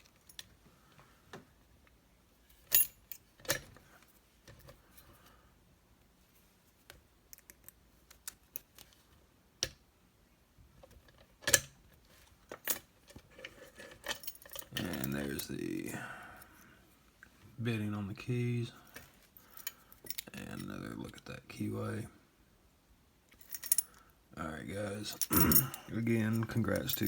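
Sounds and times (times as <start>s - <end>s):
light metal rattling: 25.1s - 27.0s
padlock clicking and clinking: 25.2s - 27.0s.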